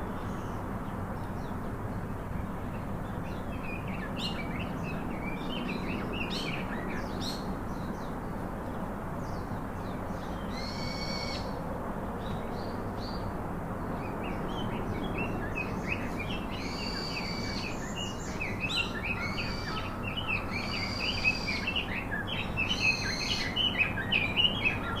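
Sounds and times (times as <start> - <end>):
steady background hiss: 0.0 - 25.0
birds chirping and calling: 14.5 - 25.0.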